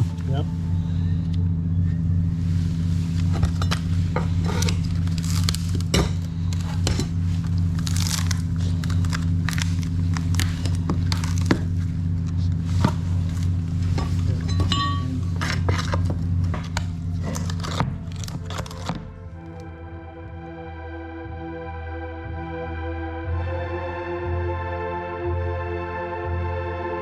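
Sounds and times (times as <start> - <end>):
steady low hum: 0.0 - 27.0
fiberglass cracking and clinking: 3.2 - 12.4, 13.3 - 19.2.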